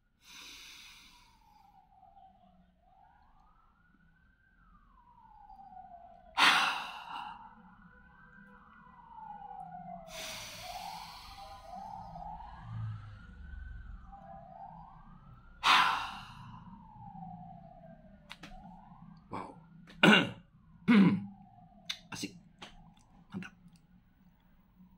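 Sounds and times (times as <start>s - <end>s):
siren wailing: 0.0s - 24.9s.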